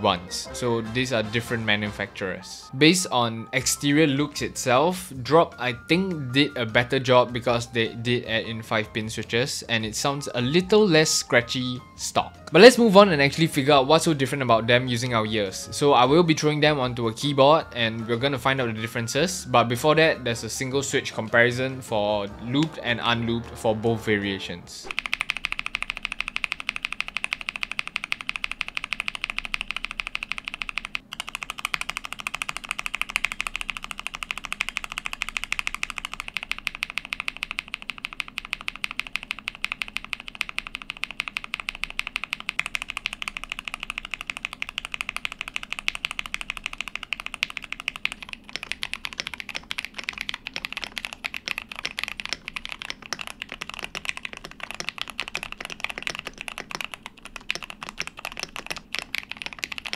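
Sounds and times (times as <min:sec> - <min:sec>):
keyboard switches clacking: 0:24.9 - 0:59.9.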